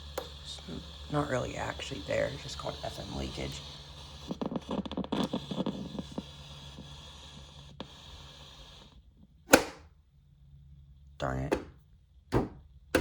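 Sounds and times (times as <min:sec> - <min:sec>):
radio static hiss: 0:00.0 - 0:08.8
scratchy crackles and pops: 0:01.6 - 0:08.0.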